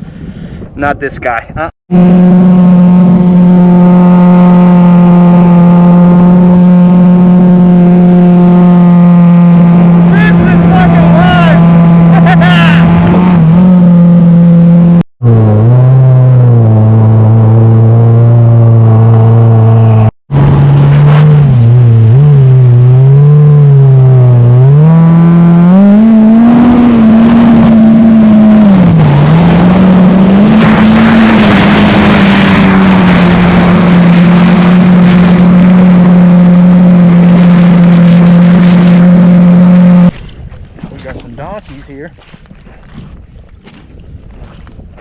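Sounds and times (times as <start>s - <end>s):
jet ski engine running hard: 1.9s - 40.2s.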